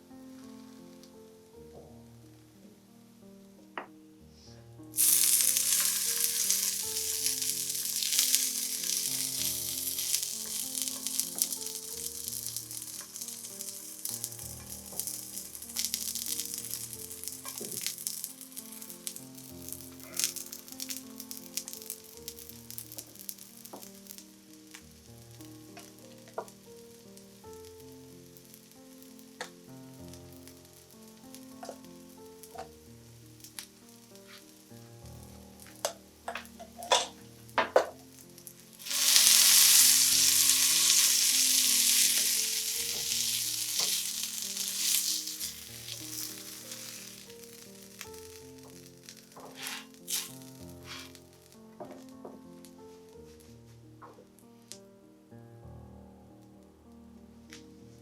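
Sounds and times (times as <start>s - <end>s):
food sizzling in hot oil: 4.9s - 29.4s, 38.0s - 51.2s.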